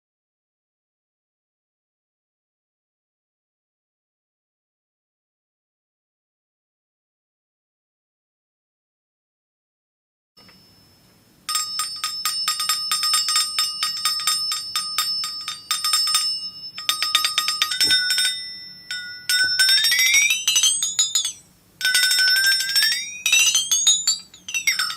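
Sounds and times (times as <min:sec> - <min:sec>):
flexatone ringing tremolo: 0:10.4 - 0:24.9.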